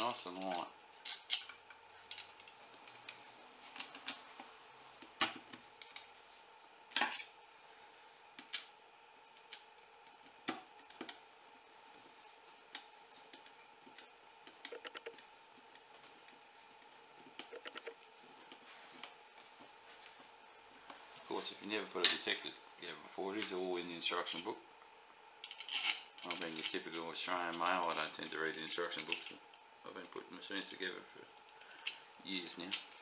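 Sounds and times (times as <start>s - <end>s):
clicks and knocks of parts handled: 0.4s - 4.3s.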